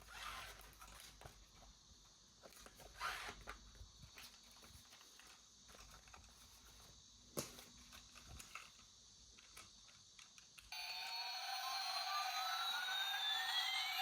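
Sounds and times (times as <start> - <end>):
plastic toy clicks and handling: 7.9 - 10.7
toy electronic siren sound effect: 10.7 - 14.0.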